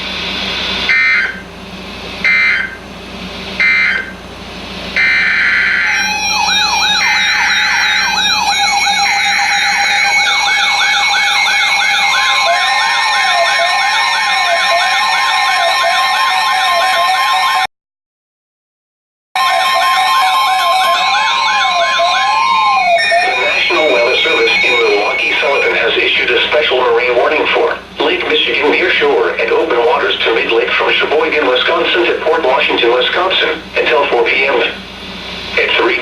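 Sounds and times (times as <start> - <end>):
steady alarm tones: 0.5 - 1.6, 2.2 - 2.9, 3.6 - 4.3, 4.9 - 17.7, 19.4 - 34.8
electronic siren wails: 0.8 - 1.5, 2.2 - 2.8, 3.6 - 4.2, 5.0 - 17.7, 19.4 - 27.7
digital data tone bursts: 5.0 - 17.2, 19.4 - 26.9.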